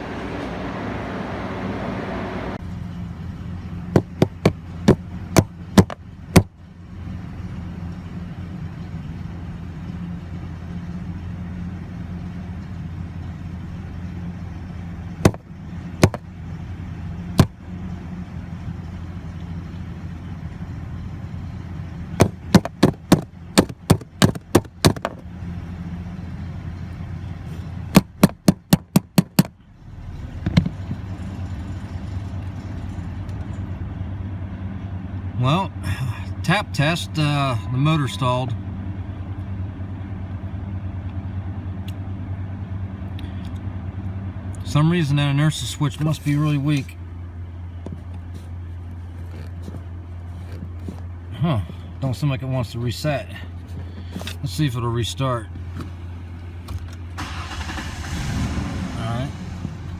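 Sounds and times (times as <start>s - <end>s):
truck engine running: 0.0s - 59.9s
sharp tapping knocks: 3.9s - 6.5s, 15.2s - 16.3s, 17.4s - 17.6s, 22.2s - 25.2s, 27.9s - 29.6s.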